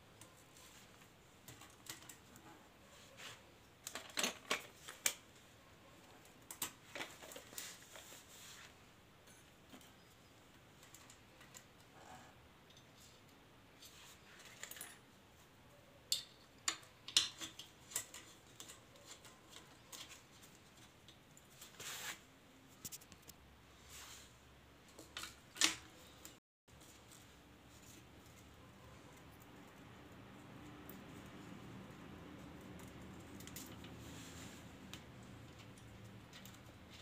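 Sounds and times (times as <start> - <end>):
metallic clicks of tools and parts: 16.0 - 20.1.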